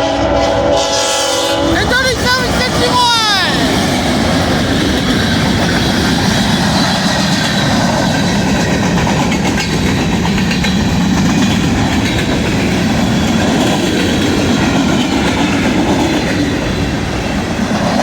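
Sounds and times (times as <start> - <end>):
train wheels rumbling on rails: 0.0 - 18.0.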